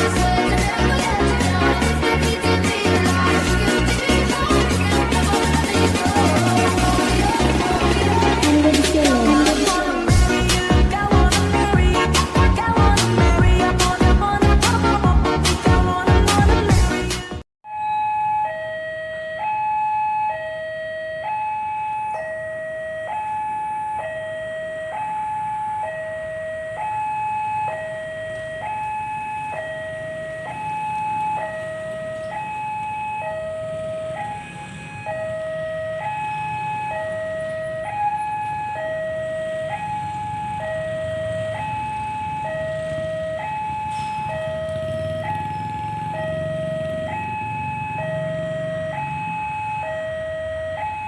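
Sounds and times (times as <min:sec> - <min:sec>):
two-tone crossing alarm: 0:00.0 - 0:13.6, 0:17.6 - 0:51.0.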